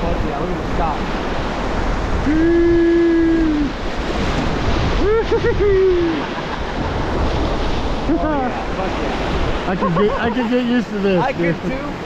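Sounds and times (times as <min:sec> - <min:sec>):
river whitewater rushing: 0:00.0 - 0:12.0
wind buffeting microphone: 0:00.0 - 0:12.0
person whooping: 0:02.2 - 0:03.8, 0:05.0 - 0:06.2.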